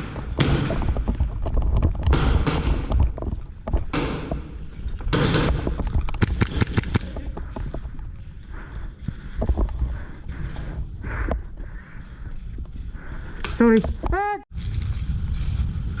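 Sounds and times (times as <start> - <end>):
airsoft guns firing: 5.1 - 7.2.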